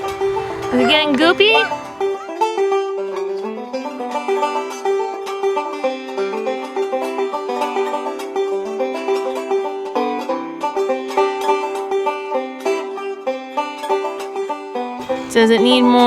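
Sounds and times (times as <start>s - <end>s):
upbeat bluegrass banjo picking: 0.0s - 16.0s.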